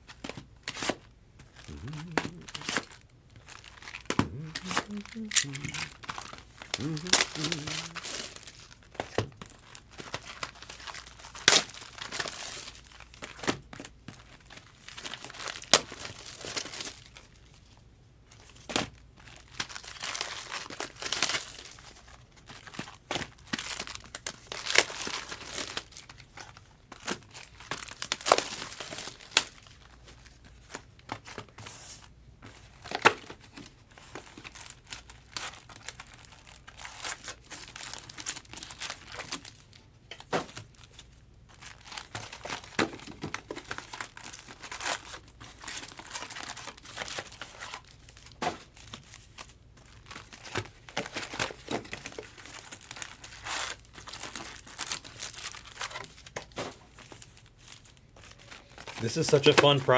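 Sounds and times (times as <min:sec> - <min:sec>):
wrappers crinkling: 0:01.6 - 0:17.4, 0:32.8 - 0:59.9.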